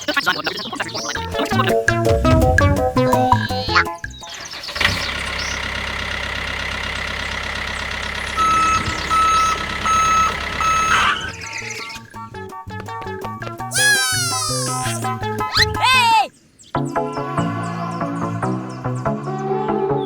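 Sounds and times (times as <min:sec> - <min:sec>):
music: 0:00.9 - 0:04.4, 0:11.1 - 0:13.8, 0:14.5 - 0:15.8, 0:16.7 - 0:20.0
heavy diesel engine running: 0:04.4 - 0:11.6
reversing alarm beeps: 0:08.3 - 0:11.4.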